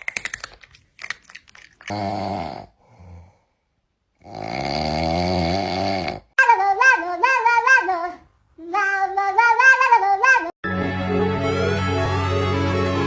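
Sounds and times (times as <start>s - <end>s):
high warbling voice: 6.4s - 10.5s.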